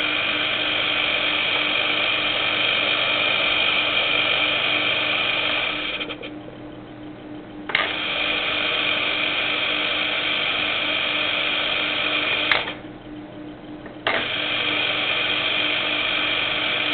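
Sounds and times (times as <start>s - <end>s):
compressor running with whine: 0.0s - 16.9s
compressor starting click: 7.7s - 12.9s, 13.8s - 16.9s.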